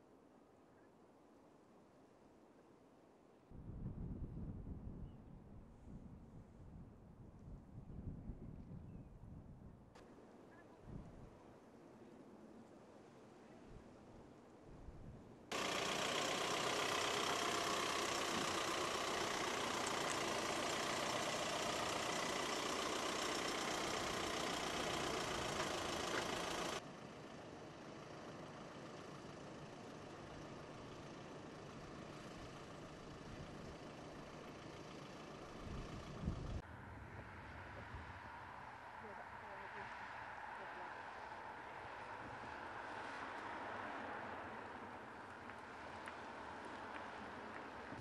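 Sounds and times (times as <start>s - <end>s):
quiet steady background noise: 0.0s - 4.3s
engine-like mechanical noise: 15.5s - 48.0s.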